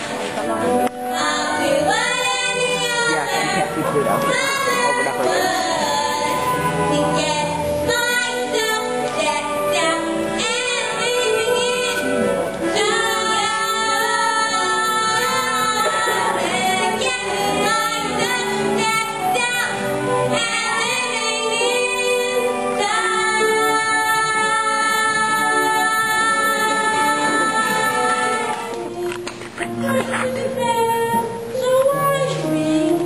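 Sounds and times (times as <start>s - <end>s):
backing music: 0.0s - 33.0s
young woman singing: 0.4s - 28.8s, 29.7s - 33.0s.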